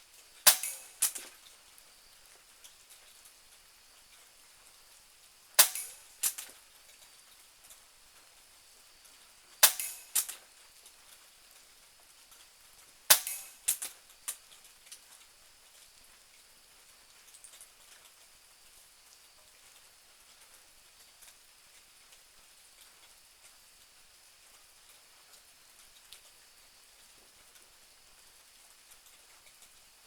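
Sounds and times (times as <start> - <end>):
air pistol shots: 0.5 - 1.2, 5.6 - 6.4, 9.6 - 10.3, 13.1 - 13.8.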